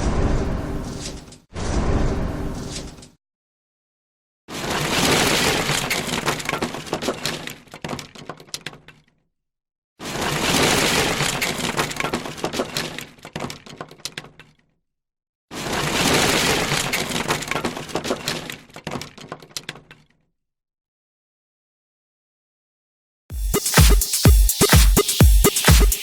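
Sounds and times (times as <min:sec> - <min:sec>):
wooden planks crashing and splintering: 0:04.5 - 0:09.1, 0:10.0 - 0:14.6, 0:15.5 - 0:20.1.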